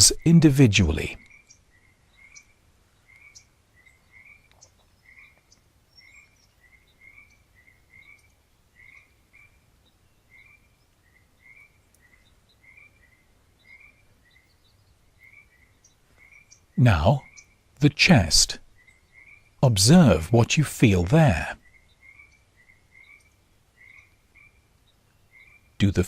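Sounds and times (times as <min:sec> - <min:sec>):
faint frog croaking chirps: 0:00.0 - 0:20.6, 0:21.2 - 0:26.0.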